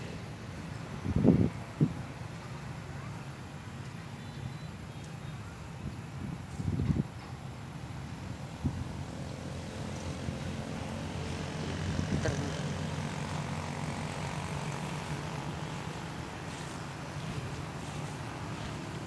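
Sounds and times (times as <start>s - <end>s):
vehicle engine droning: 9.0s - 19.0s.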